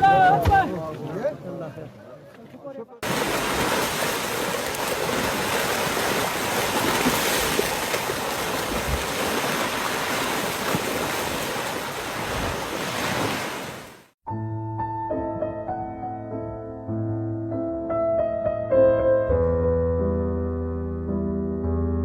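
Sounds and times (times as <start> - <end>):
wind: 0.0 - 14.2
rough water rushing: 3.0 - 14.1.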